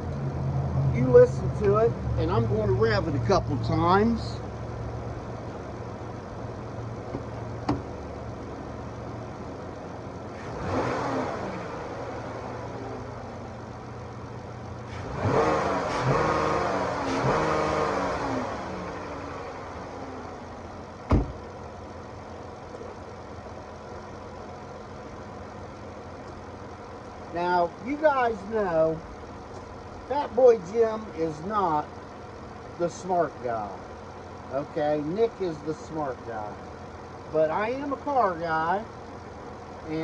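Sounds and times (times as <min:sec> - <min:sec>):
car engine idling and revving: 0:00.0 - 0:40.0
sharp knock: 0:21.1 - 0:21.4.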